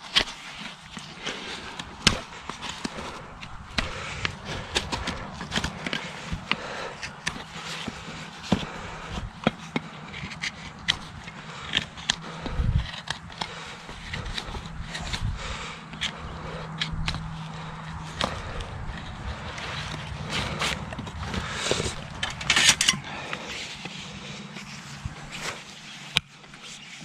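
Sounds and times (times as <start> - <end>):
scraping hoof: 0.0 - 27.0
hand tools clicking on hoof: 0.1 - 24.3.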